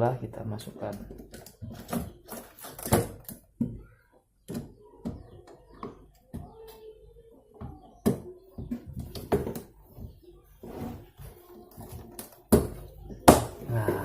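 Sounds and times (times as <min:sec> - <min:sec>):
plastic parts clacking and knocking: 0:00.6 - 0:06.5, 0:07.6 - 0:10.3, 0:11.7 - 0:13.6.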